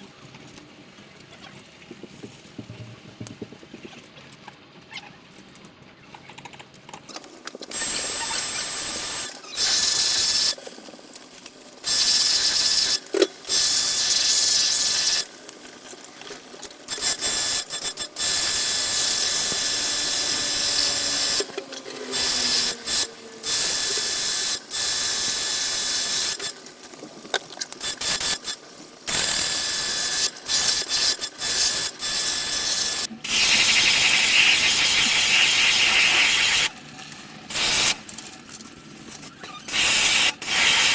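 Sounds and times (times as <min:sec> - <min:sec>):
pressure washer spraying: 0:27.8 - 0:36.7, 0:37.5 - 0:38.0, 0:39.7 - 0:40.9.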